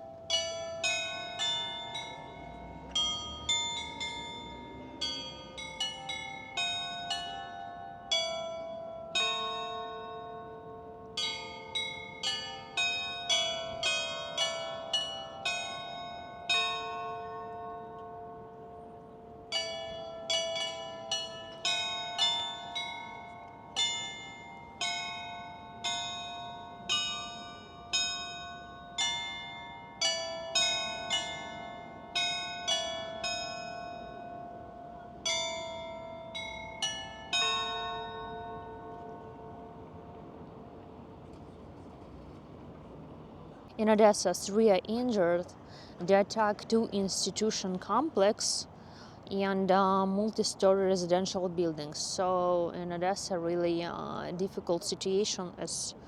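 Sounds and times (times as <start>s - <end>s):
tuned bells ringing: 0.0s - 41.2s.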